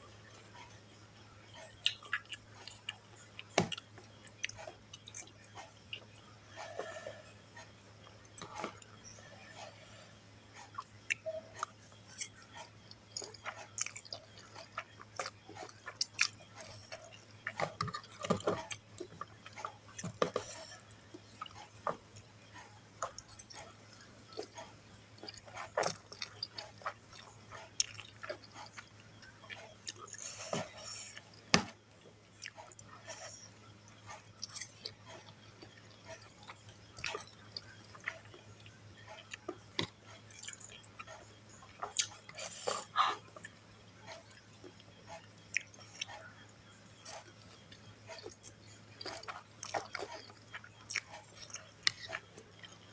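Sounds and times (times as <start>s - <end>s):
faint low hum: 0.0s - 52.9s
close-up chewing: 0.2s - 52.9s.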